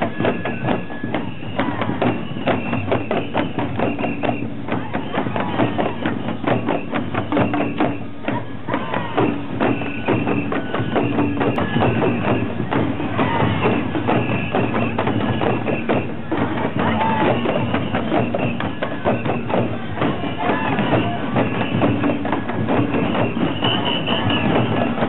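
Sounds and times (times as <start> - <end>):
fan drums beating: 0.0 - 25.0
flute playing high notes: 16.8 - 25.0.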